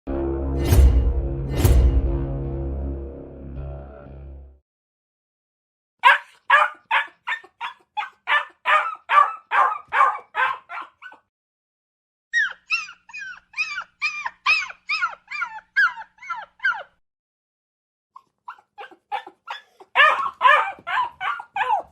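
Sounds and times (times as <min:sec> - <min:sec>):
dog whimpering: 0:06.1 - 0:09.8, 0:10.4 - 0:11.3, 0:12.4 - 0:17.0, 0:18.2 - 0:21.9.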